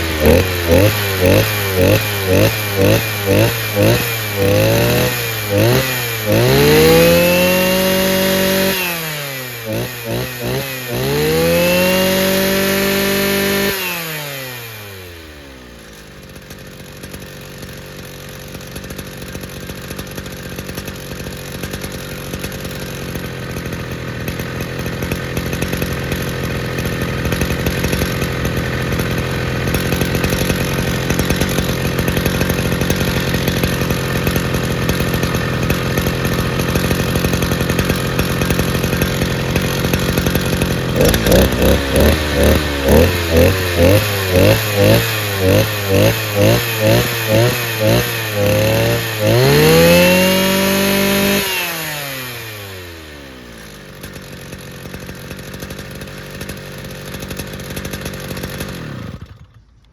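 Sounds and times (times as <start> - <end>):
brush cutter engine revving: 0.0 - 59.9.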